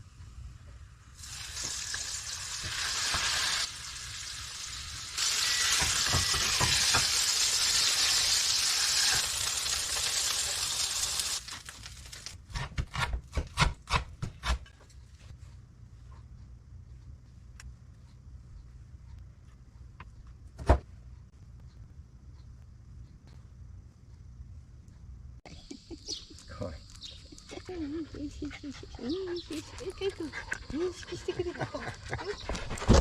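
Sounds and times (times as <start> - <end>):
food sizzling in frying pan: 1.0 - 12.4.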